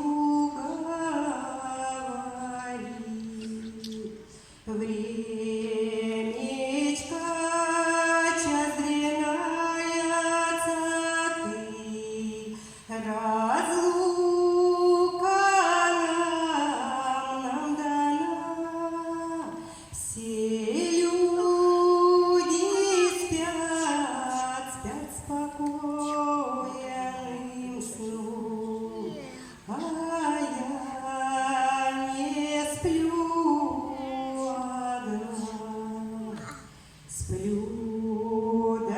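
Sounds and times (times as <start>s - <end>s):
women's choir singing: 2.1s - 9.4s, 20.2s - 36.6s.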